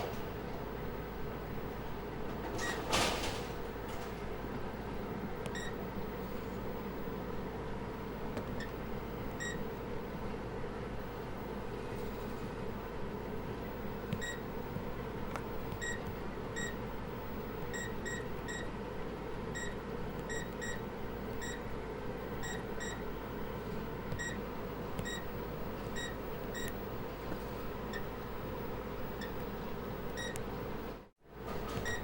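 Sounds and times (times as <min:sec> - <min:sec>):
computer machine hum: 0:00.0 - 0:32.0.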